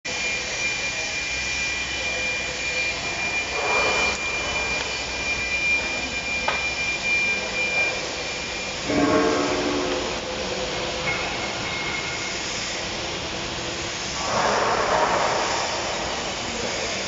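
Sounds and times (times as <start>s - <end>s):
thin high whine: 0.1s - 17.0s
welding arc hissing: 0.1s - 17.0s.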